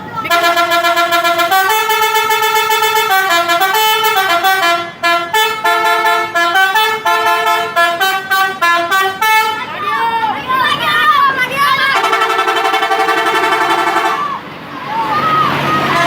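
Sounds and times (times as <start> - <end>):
multi-tone musical air horn: 0.3 - 9.6, 12.0 - 14.4.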